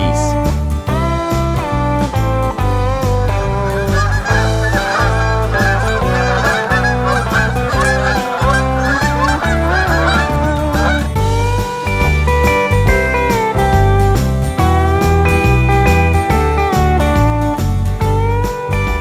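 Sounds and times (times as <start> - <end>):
background music with bass line: 0.0 - 19.0
geese honking: 3.3 - 11.2.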